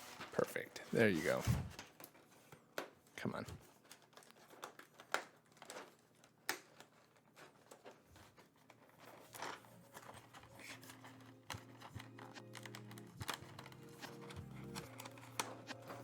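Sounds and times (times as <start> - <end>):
plastic keycaps clicking and rattling: 3.7 - 16.0
soft background music: 8.7 - 16.0.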